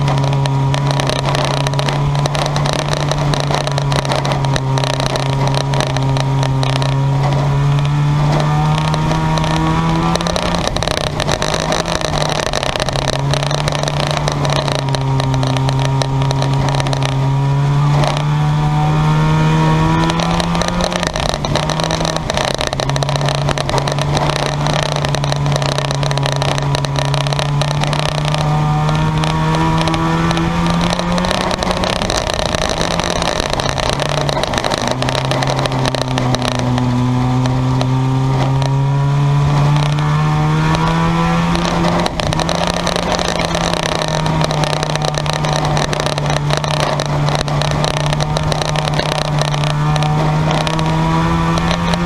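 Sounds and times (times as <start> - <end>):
other car engines running: 0.0 - 52.0
race car engine revving: 0.0 - 52.0.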